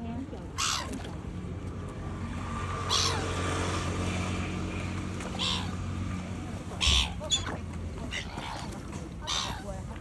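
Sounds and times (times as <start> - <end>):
harsh bird calls: 5.3 - 5.8.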